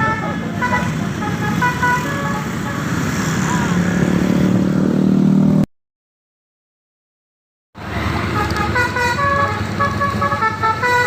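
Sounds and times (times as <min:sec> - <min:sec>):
musical bus horn: 0:00.0 - 0:03.0, 0:08.1 - 0:11.0.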